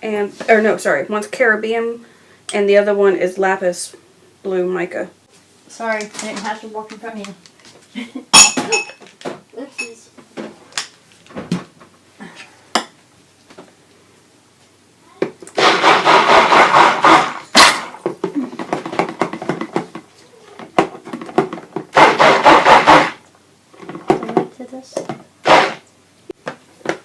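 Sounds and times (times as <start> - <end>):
stick blender whirring: 15.5 - 19.7, 20.7 - 23.3, 25.4 - 25.9.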